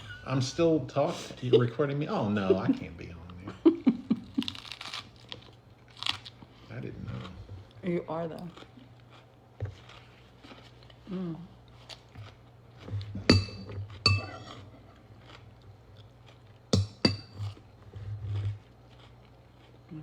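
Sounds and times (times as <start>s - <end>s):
utensil clinking against dish: 13.2s - 14.6s.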